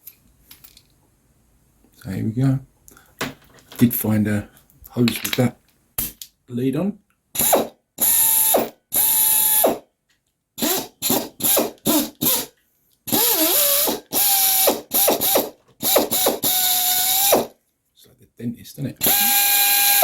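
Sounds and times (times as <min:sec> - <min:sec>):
pneumatic drill whining: 0:07.4 - 0:09.8, 0:10.6 - 0:12.5, 0:13.1 - 0:17.5, 0:19.0 - 0:20.0.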